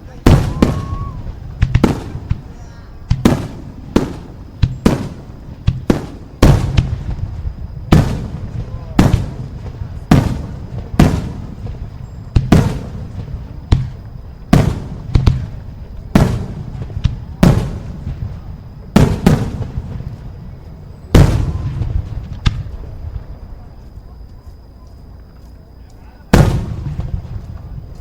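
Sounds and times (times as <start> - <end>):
fireworks banging: 0.0 - 24.5, 26.2 - 28.0
rumble after fireworks: 0.0 - 28.0.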